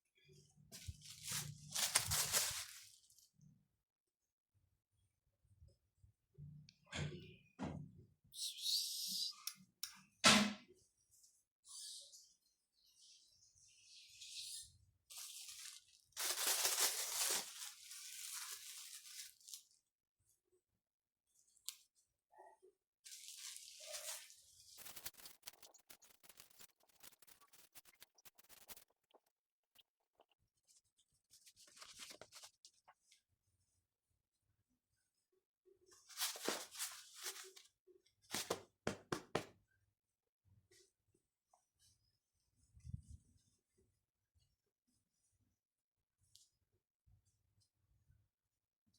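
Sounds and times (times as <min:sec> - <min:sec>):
crinkling and tearing: 0:01.0 - 0:03.2, 0:15.1 - 0:19.7, 0:23.1 - 0:28.9.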